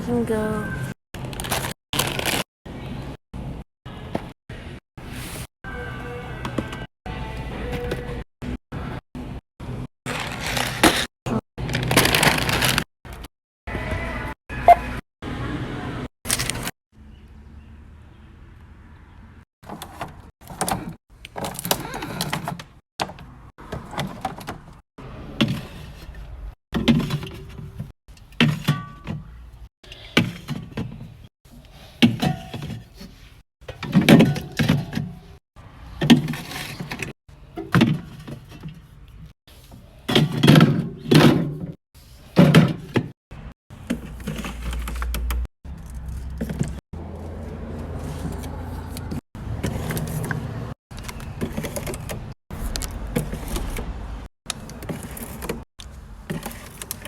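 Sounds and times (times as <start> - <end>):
packaging rustling: 1.2 - 2.5, 10.1 - 12.9
items knocking and clattering: 10.2 - 12.8, 19.6 - 24.8, 26.7 - 29.4, 32.0 - 35.4, 36.0 - 38.8, 40.1 - 41.8, 42.4 - 45.5, 49.6 - 53.8.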